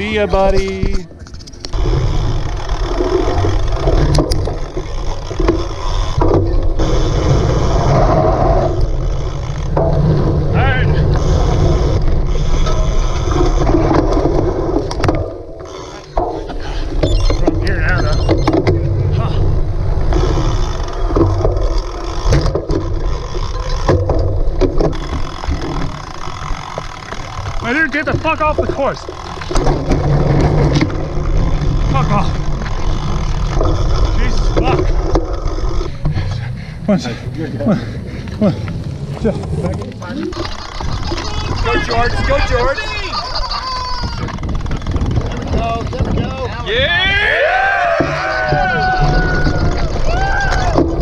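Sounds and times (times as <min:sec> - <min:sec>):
bike rattling over rough ground: 0:00.0 - 0:51.0
wind rush on microphone: 0:29.6 - 0:51.0.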